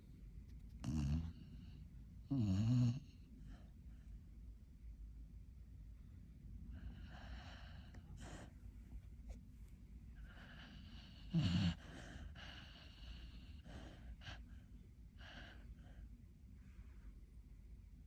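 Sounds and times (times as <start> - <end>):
dog snoring: 0.8 - 3.3, 10.2 - 14.5.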